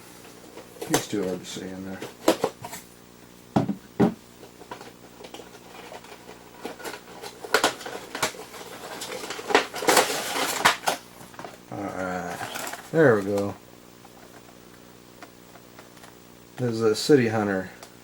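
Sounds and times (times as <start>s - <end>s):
plastic packaging crinkling: 4.7s - 13.5s.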